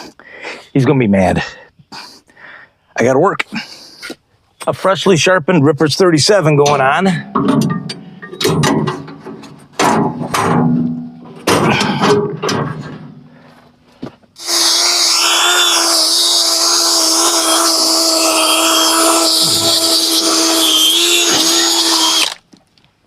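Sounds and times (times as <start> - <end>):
band saw whining: 14.4 - 22.4
short loud bursts: 14.4 - 22.4.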